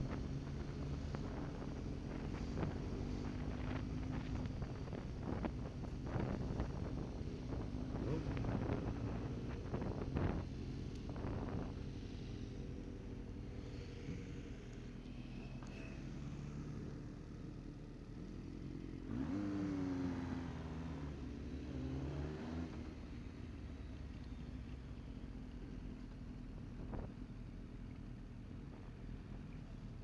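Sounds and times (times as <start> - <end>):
wind buffeting microphone: 0.0 - 11.9
motorcycle engine cruising: 0.0 - 30.0.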